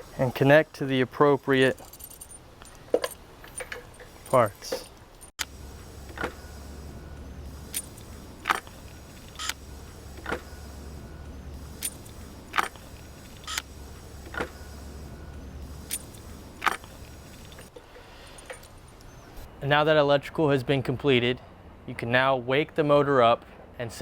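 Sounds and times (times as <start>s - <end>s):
low steady hum: 1.4s - 19.6s
small hardware clicking and clinking: 1.6s - 6.6s, 7.5s - 17.7s.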